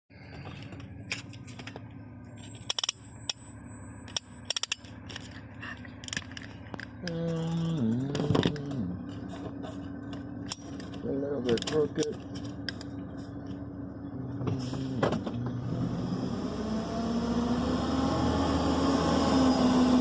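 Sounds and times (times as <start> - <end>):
vehicle engine running: 0.1 - 20.0
sharp clicks and rattles: 4.0 - 13.6.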